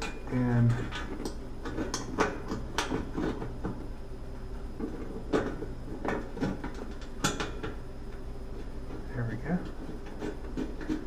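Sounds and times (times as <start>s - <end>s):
steady low hum: 0.0s - 11.0s
metal clicks and scrapes: 8.9s - 11.0s.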